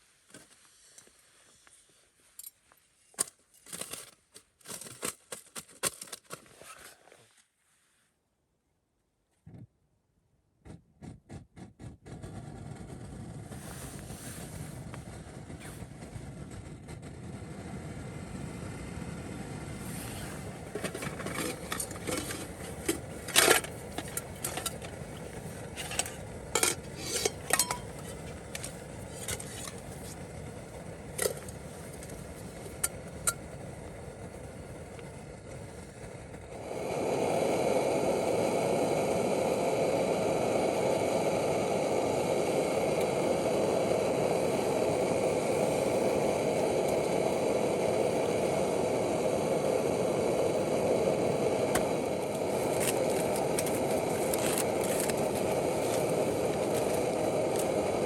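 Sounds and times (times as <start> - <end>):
metal cookware clattering: 25.8 - 29.8.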